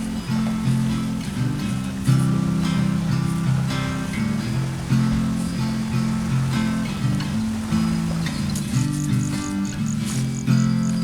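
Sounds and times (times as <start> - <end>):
strummed acoustic guitar music: 0.0 - 11.0.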